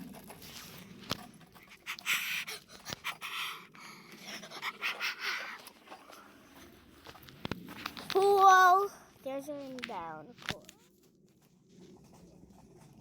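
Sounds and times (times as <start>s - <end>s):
person breathing and panting: 0.4s - 7.0s.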